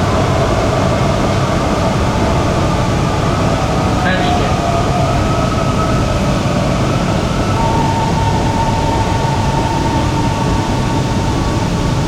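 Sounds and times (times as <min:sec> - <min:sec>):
traction motor whine: 0:06.5 - 0:12.0.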